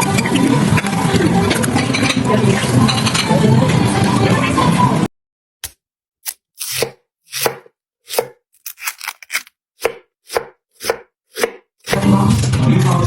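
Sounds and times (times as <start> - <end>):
knife chopping on cutting board: 5.6 - 12.1.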